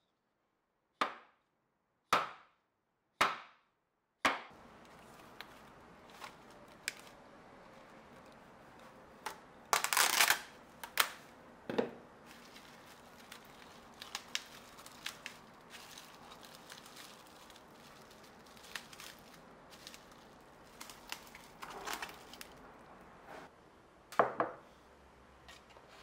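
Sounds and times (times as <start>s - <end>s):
crinkling rustle: 4.6s - 11.3s, 12.2s - 22.9s.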